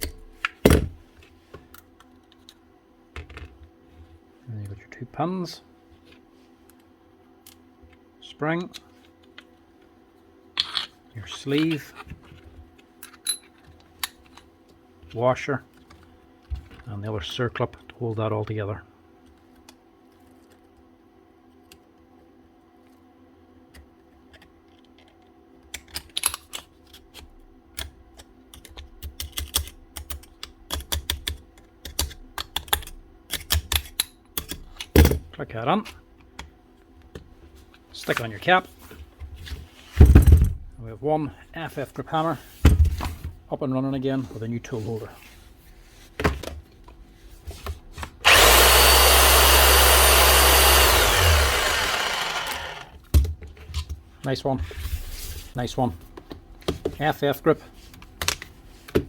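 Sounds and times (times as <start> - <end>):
electric hammer running: 48.2 - 53.0.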